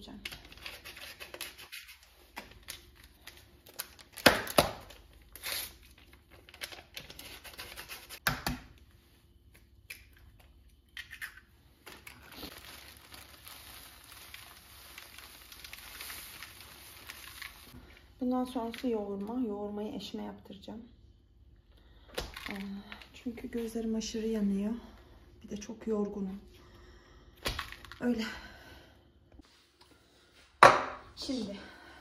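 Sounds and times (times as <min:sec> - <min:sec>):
paper packets tearing and crinkling: 0:11.9 - 0:17.8.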